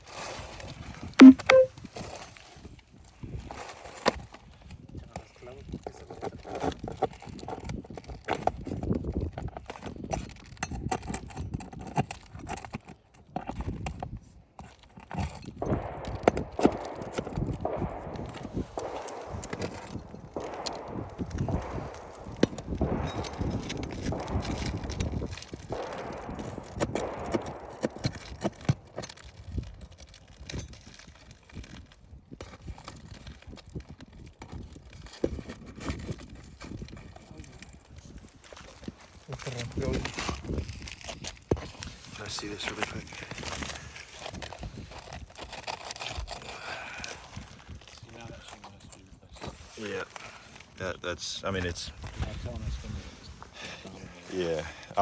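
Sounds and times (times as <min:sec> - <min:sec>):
scraping on shingled roof: 0:00.0 - 0:01.1, 0:01.9 - 0:04.8, 0:05.7 - 0:50.8
knocks and taps on roof shingles: 0:06.0 - 0:39.2
scraping rustle: 0:34.3 - 0:50.8, 0:51.6 - 0:55.0.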